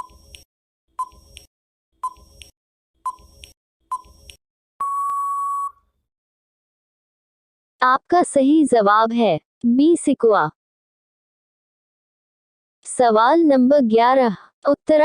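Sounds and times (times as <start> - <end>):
electronic timer beeps: 0.0 - 5.8.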